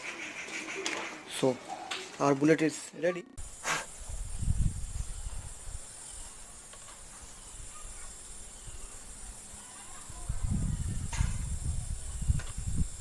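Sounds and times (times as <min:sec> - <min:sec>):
insects chirring: 0:03.4 - 0:13.0.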